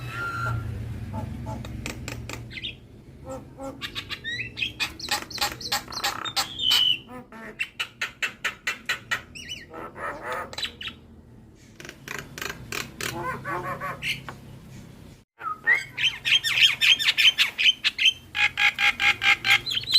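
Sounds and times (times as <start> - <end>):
bird chirps and clicks: 1.6 - 2.8, 3.9 - 7.0, 10.2 - 11.0.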